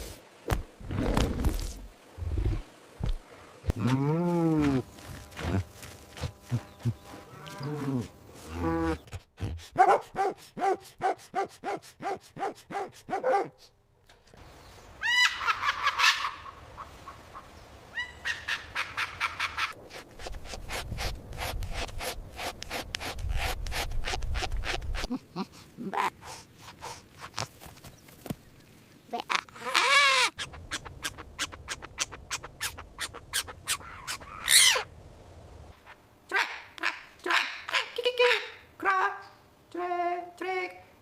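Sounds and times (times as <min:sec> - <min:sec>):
rapid pulsing calls: 0:29.3 - 0:34.8.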